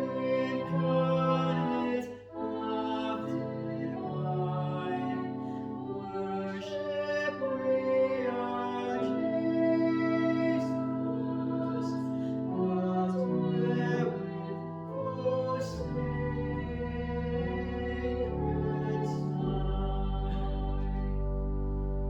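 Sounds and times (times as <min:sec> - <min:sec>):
person singing: 0:00.0 - 0:21.2
sustained chords: 0:07.6 - 0:22.0.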